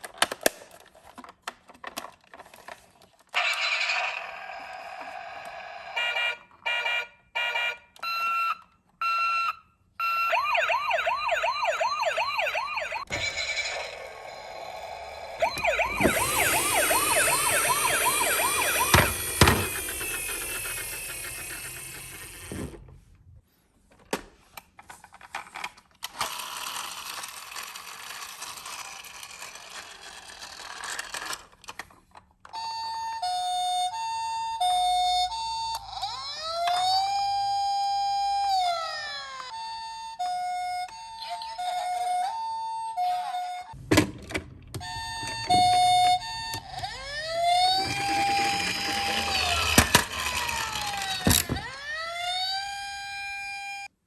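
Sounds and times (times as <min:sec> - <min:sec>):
ambulance siren wailing: 0:03.4 - 0:22.7, 0:32.8 - 0:43.8, 0:44.8 - 0:53.9
two-tone high-low siren: 0:05.9 - 0:22.6, 0:44.9 - 0:53.9
broken noise: 0:43.8 - 0:52.6.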